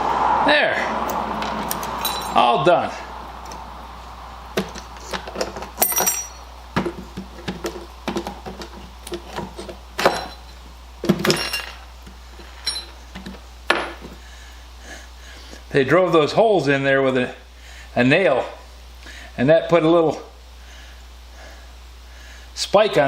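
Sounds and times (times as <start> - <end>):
screws clinking on wood: 1.7 - 2.4, 5.4 - 6.4, 10.0 - 10.6, 11.2 - 11.8, 12.4 - 13.9.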